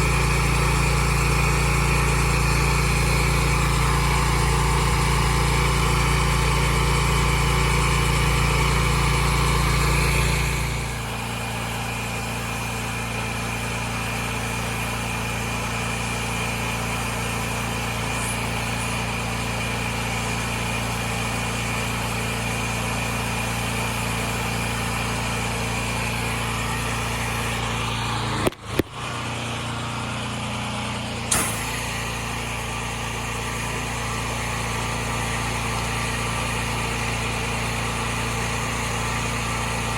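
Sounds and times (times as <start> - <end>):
pressure washer running: 0.0 - 39.9
short click: 31.3 - 31.7.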